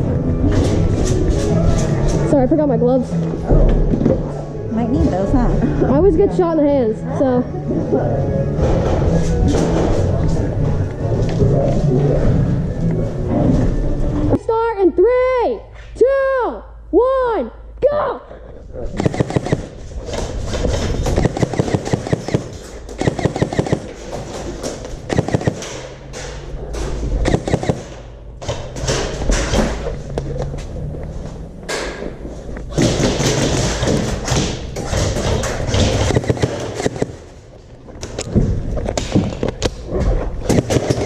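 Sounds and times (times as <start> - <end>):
airsoft guns firing: 19.0 - 19.8, 21.1 - 24.0, 25.1 - 25.9, 27.2 - 28.0, 35.7 - 37.3, 40.5 - 41.0.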